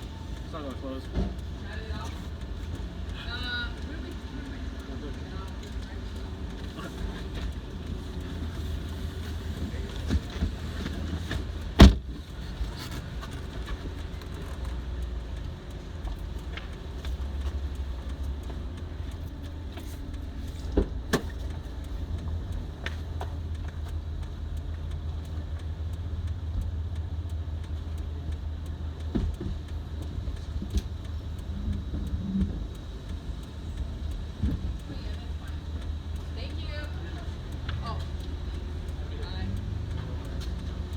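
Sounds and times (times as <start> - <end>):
car engine and road rumble: 0.0 - 40.9.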